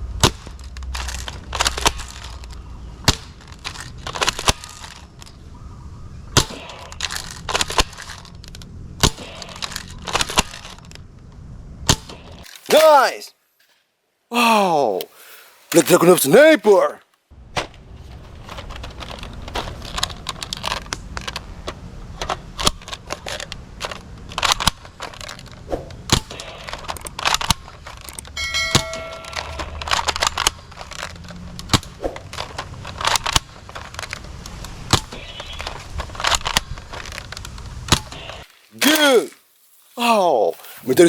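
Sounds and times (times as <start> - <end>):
plastic toy guns clicking: 0.2 - 2.6, 6.6 - 11.0.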